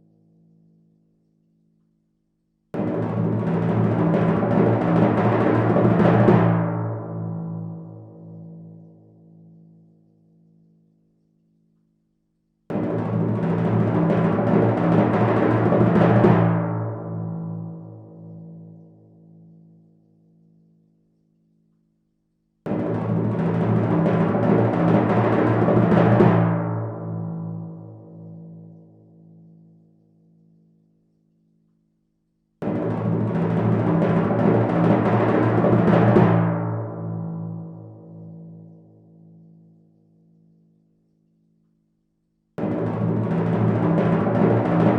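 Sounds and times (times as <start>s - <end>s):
timpani roll: 22.7s - 27.0s, 32.6s - 37.2s, 42.6s - 44.9s.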